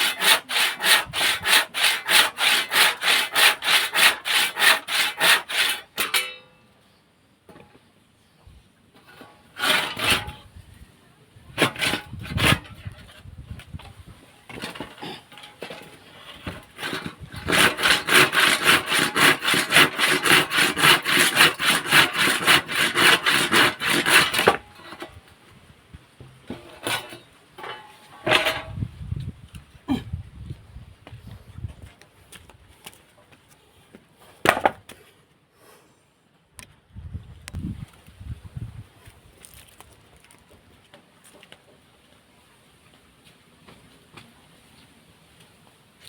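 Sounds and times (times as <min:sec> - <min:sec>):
hand saw cutting wood: 0:00.0 - 0:06.3, 0:09.0 - 0:10.5, 0:11.6 - 0:13.2, 0:14.5 - 0:25.2, 0:26.5 - 0:28.7.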